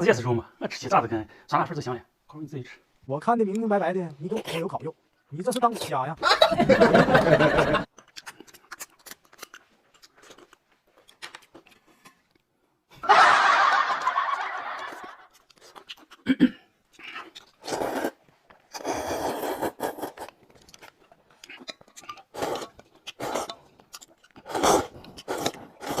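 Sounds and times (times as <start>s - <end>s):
chewing crunches and clicks: 7.9s - 12.5s, 14.8s - 18.8s, 19.6s - 26.0s.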